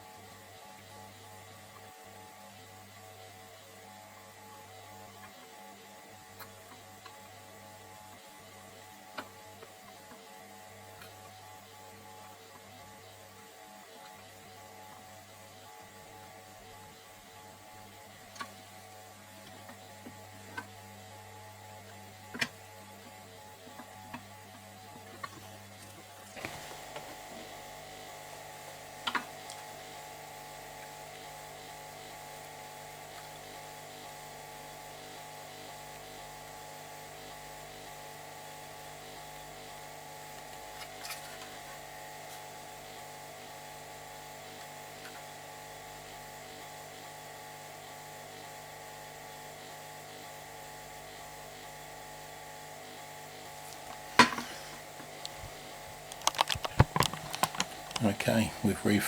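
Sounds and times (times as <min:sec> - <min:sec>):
equipment hum: 0:53.0 - 0:59.0.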